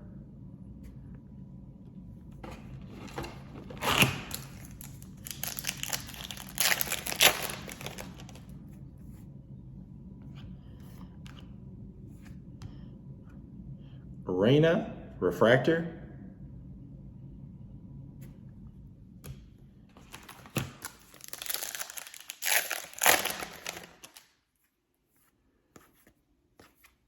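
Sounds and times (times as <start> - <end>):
wrapper tearing and crinkling: 3.0 - 8.5, 20.0 - 24.3.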